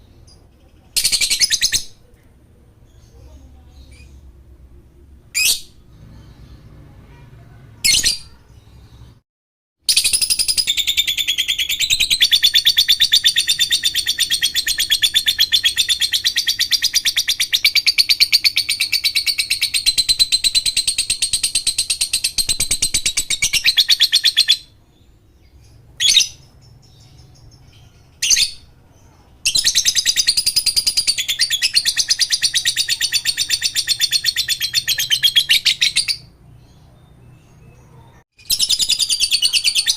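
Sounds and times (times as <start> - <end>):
bird chattering trills: 10.0 - 24.8, 29.5 - 39.9.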